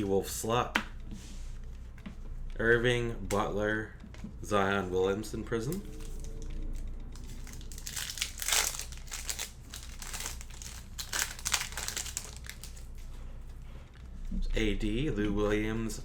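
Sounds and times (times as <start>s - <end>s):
plastic wrapper crinkling: 5.6s - 13.1s.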